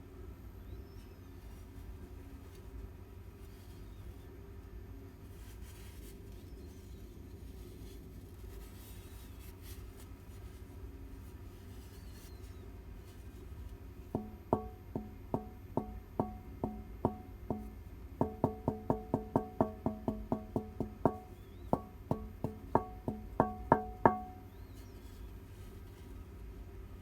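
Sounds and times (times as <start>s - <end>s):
tapping on hollow part: 14.2s - 24.5s.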